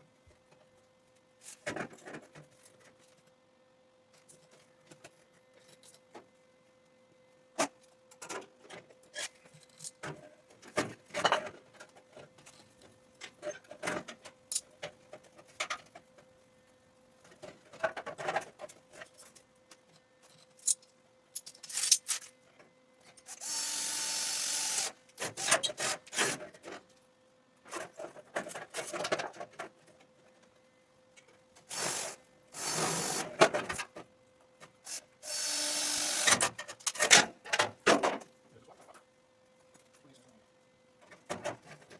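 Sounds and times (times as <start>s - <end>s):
metal parts clanking: 20.6s - 22.3s
power tool running: 23.3s - 24.9s, 31.7s - 33.4s, 35.2s - 36.4s.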